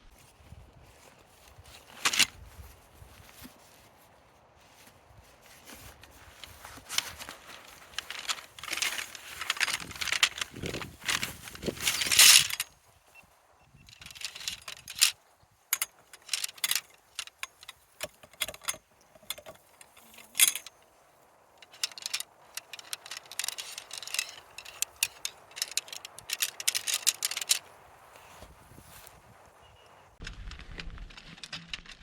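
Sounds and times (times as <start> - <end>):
small hard objects clinking: 6.6 - 12.7, 21.6 - 27.7.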